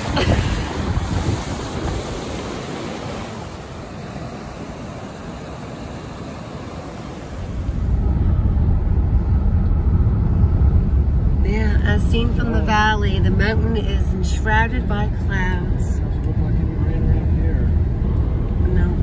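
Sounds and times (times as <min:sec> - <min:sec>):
stream rushing: 0:00.0 - 0:08.6
heavy low rumble: 0:07.3 - 0:19.0.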